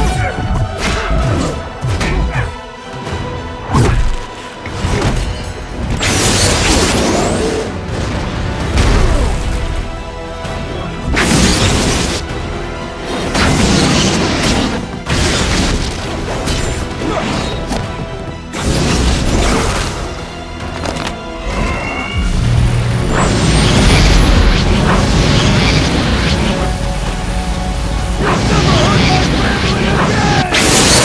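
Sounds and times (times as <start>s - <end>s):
dramatic music: 0.0s - 31.0s
heavy blasts and crashes: 21.4s - 31.0s.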